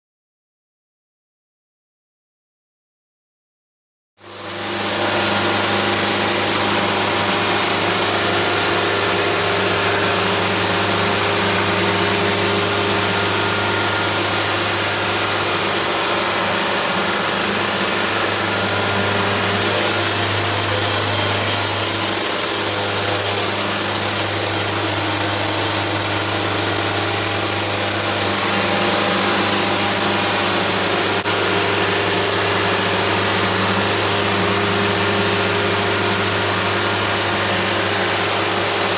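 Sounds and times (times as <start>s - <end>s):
band sawmill sawing log: 4.3s - 38.9s.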